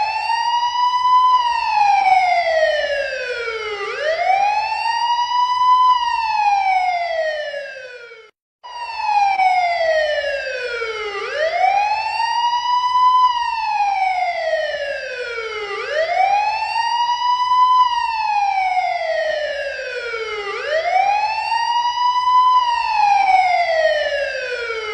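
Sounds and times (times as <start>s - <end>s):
police siren wailing: 0.0s - 24.9s.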